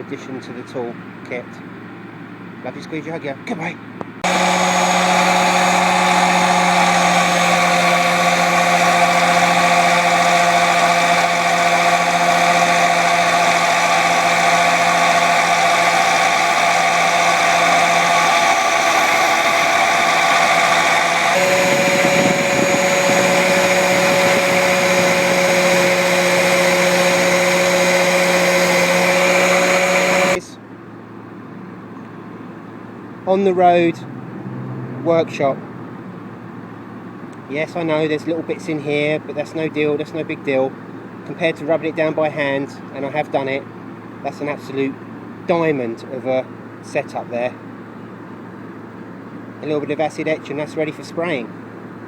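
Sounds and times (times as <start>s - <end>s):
bench grinder wire brush whining: 4.2s - 30.5s.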